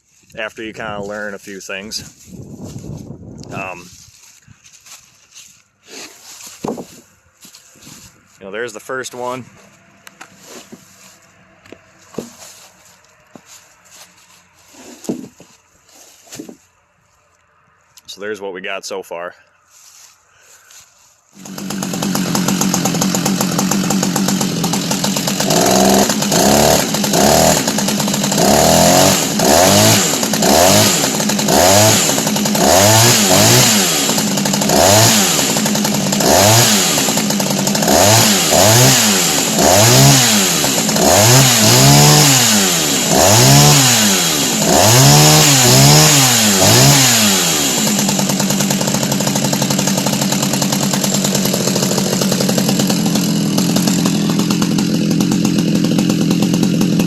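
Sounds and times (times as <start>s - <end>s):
chainsaw revving: 9.1s - 16.5s, 19.8s - 57.0s.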